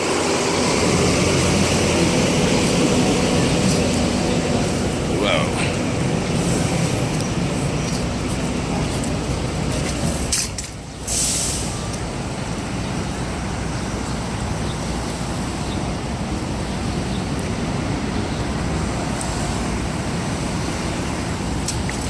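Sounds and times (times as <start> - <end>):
traffic rumble: 0.0 - 22.0
short high hiss: 11.1 - 11.8.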